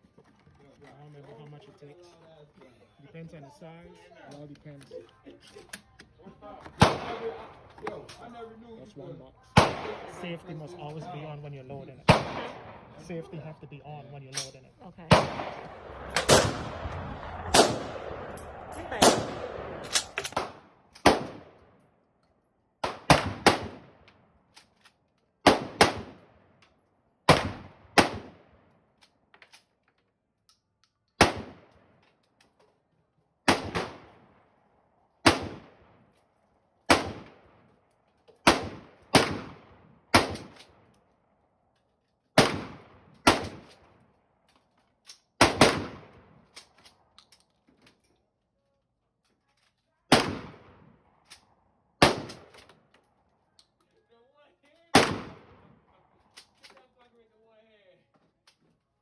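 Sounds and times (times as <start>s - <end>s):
gunshots with echo: 6.8s - 7.5s, 9.6s - 10.3s, 12.0s - 13.1s, 15.1s - 21.5s, 22.8s - 23.9s, 35.2s - 35.8s, 38.4s - 40.6s, 55.0s - 55.6s.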